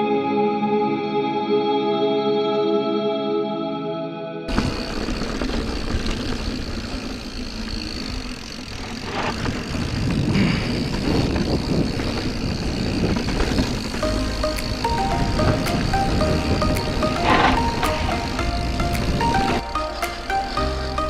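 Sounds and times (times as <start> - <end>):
tyres rolling over dirt trail: 4.5 - 21.0
wind on camera microphone: 9.1 - 14.0
guitar music: 14.0 - 21.0.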